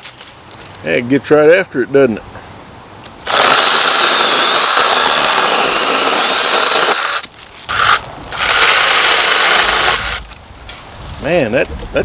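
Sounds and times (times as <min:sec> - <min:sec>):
electric chainsaw cutting a limb: 0:03.2 - 0:10.4.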